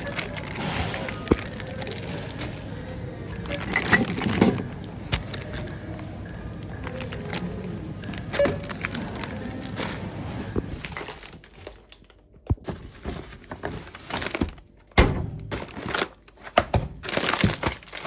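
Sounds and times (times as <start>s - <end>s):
plastic packaging crinkling: 0.0s - 5.8s, 15.5s - 18.0s.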